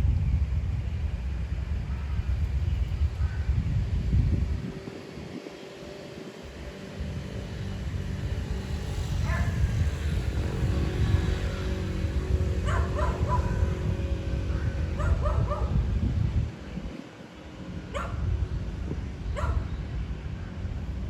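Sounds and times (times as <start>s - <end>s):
steady engine hum: 0.0s - 21.0s
wind buffeting microphone: 0.0s - 21.0s
dog barking: 12.7s - 13.6s, 15.0s - 15.7s, 18.0s - 18.2s, 19.4s - 19.6s.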